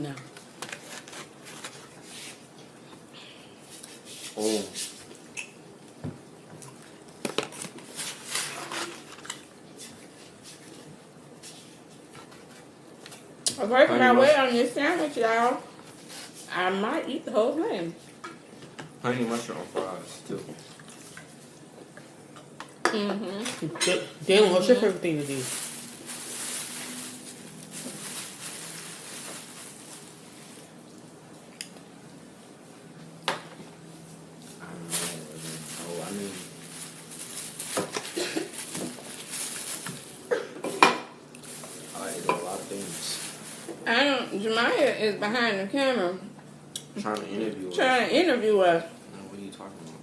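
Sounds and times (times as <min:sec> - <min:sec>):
eating and food handling: 0:03.7 - 0:14.2, 0:18.0 - 0:24.0, 0:24.6 - 0:43.8.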